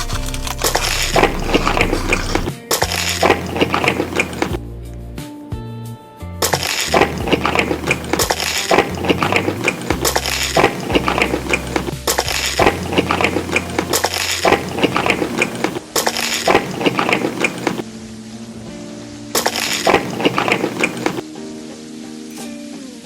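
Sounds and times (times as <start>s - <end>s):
crunchy chewing: 0.0s - 4.6s, 6.5s - 17.8s
soft background music: 0.0s - 23.0s.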